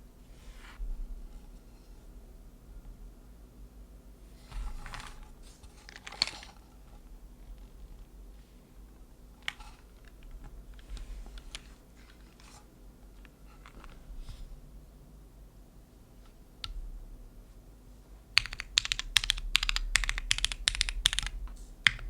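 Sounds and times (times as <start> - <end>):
mechanical keyboard keystrokes: 18.4 - 22.0.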